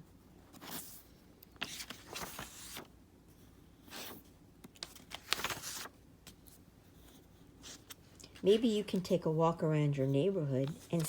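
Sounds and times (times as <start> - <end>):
paper pages rustling: 0.5 - 2.9, 3.9 - 9.1, 10.6 - 11.0.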